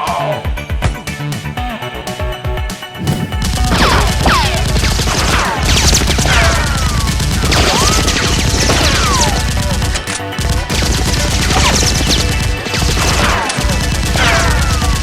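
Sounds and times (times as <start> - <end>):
background music: 0.0 - 14.0
laser blaster shots: 3.0 - 4.1.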